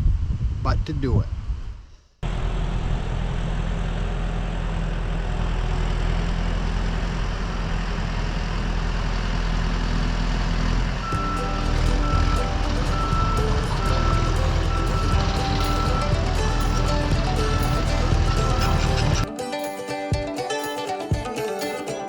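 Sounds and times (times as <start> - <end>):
diesel engine running under load: 2.2 - 19.3
backup alarm beeping: 11.0 - 19.3.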